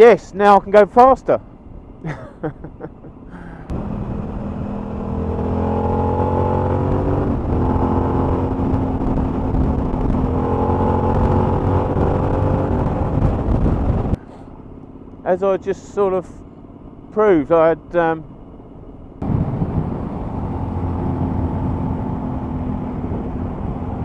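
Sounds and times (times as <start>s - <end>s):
motorcycle engine accelerating: 3.6s - 14.2s, 19.2s - 24.0s.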